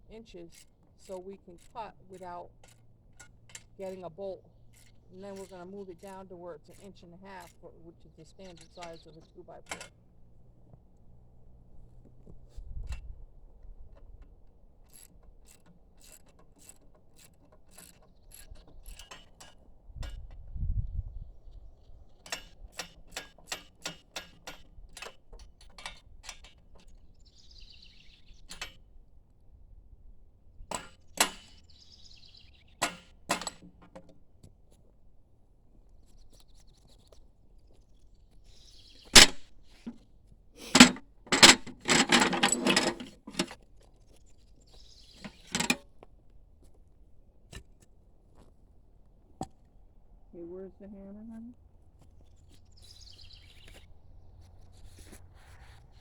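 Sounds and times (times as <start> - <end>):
metal clattering: 39.1 - 40.0, 40.6 - 43.6, 45.2 - 45.8.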